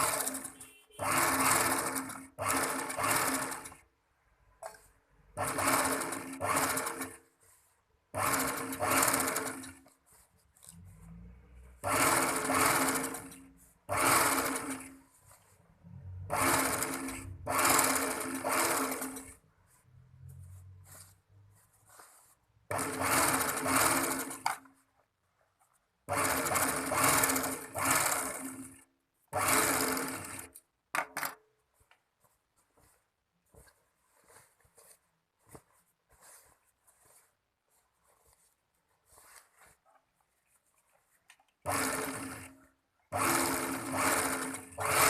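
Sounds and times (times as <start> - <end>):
overlock sewing machine stitching: 0.0 - 3.9, 4.6 - 7.3, 8.1 - 19.4, 22.7 - 24.8, 26.0 - 31.4, 41.6 - 45.0.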